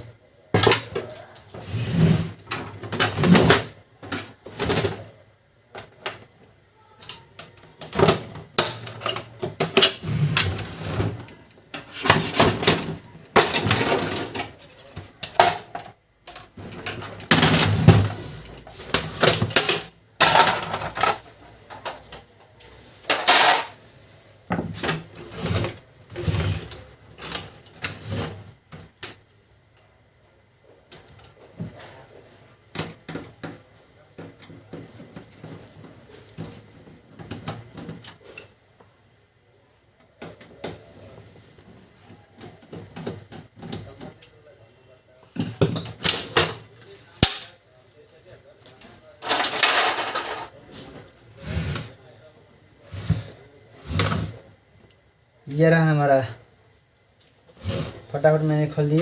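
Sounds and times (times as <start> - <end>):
printer parts clattering and scraping: 7.9 - 22.2, 23.0 - 23.8, 48.9 - 52.0.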